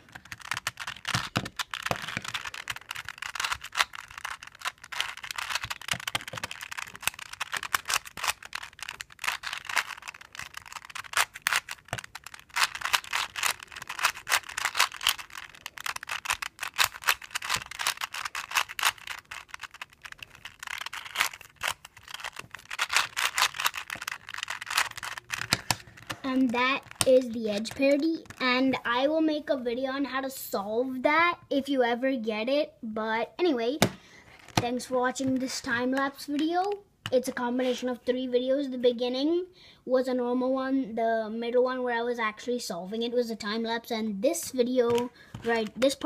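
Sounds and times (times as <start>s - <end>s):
plastic puzzle cube clicking: 0.0s - 28.5s, 44.9s - 46.0s.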